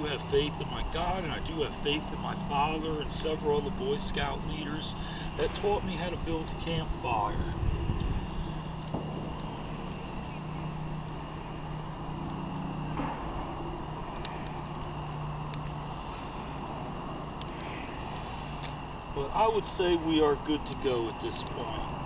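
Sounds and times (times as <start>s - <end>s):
campfire crackling: 0.0s - 22.0s
outdoor background drone: 0.0s - 22.0s.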